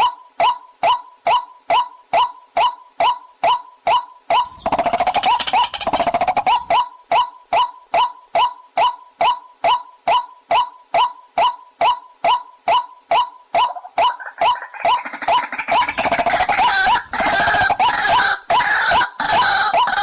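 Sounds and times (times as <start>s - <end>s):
fast chattering rattle: 4.4s - 6.8s, 13.8s - 19.4s
waterhen harsh call: 13.6s - 20.0s.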